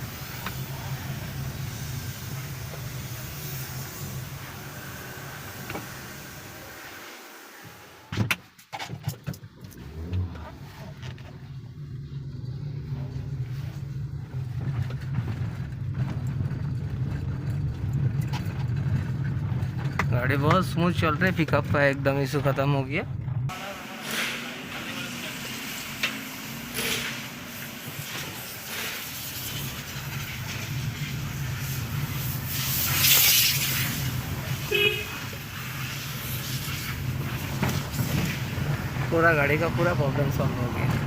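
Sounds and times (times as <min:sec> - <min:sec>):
hiss: 0:00.0 - 0:08.1, 0:23.5 - 0:39.5
car engine and road noise rumble: 0:00.0 - 0:41.0.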